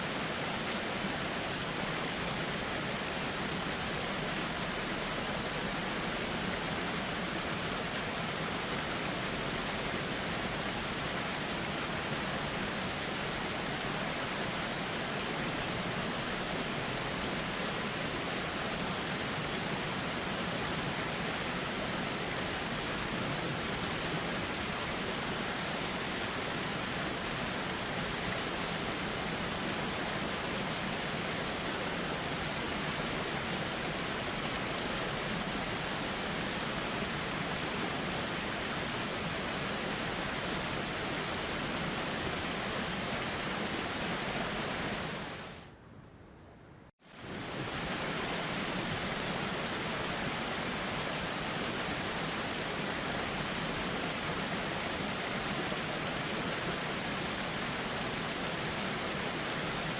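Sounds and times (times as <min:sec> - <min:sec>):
river flowing: 0:00.0 - 0:45.7, 0:47.0 - 0:59.9.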